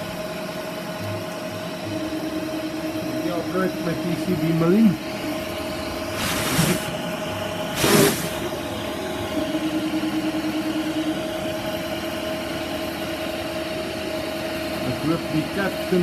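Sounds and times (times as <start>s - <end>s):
cnc spindle whine: 0.0s - 16.0s
short loud hissing bursts: 6.1s - 7.0s, 7.7s - 8.4s.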